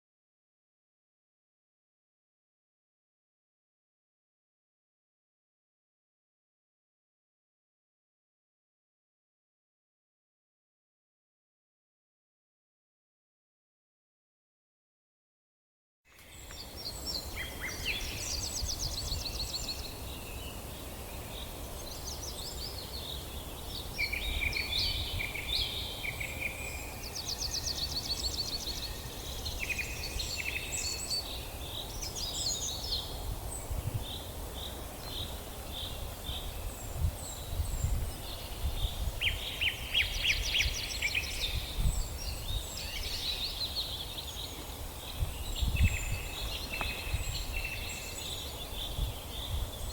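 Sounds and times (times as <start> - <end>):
wind rumble on microphone: 16.4 - 49.9.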